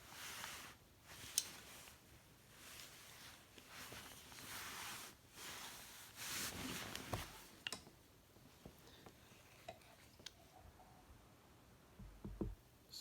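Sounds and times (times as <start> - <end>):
soft rustling and scraping: 0.0 - 7.6, 8.4 - 10.6.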